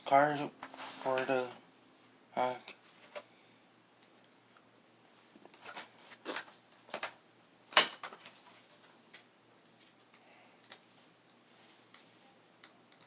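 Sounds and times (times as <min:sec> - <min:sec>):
items rustling and knocking: 0:05.2 - 0:12.2.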